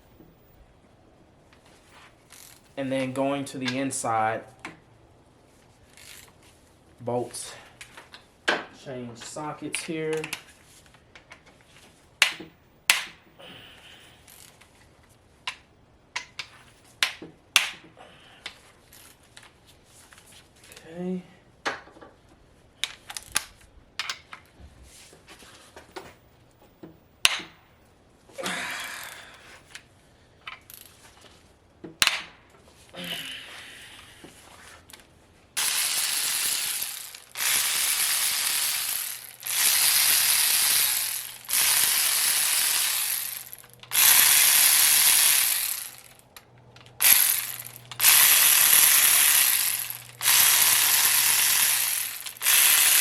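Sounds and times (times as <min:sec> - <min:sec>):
ratchet wrench ratcheting: 0:02.3 - 0:02.7, 0:05.9 - 0:06.3, 0:14.2 - 0:14.7, 0:30.5 - 0:31.0, 0:35.6 - 0:53.0.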